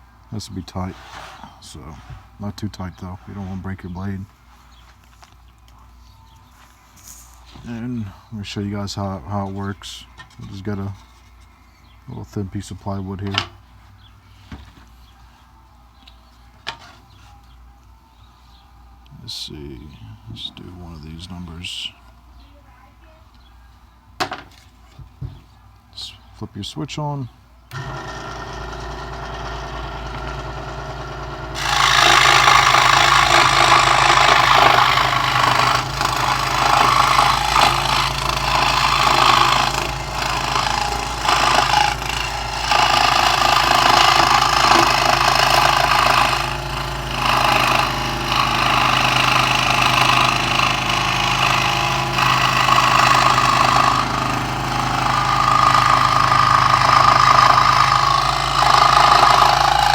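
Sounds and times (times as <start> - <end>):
saw blade rasping through plywood: 27.7 - 59.9
scroll saw motor hum: 27.7 - 59.9.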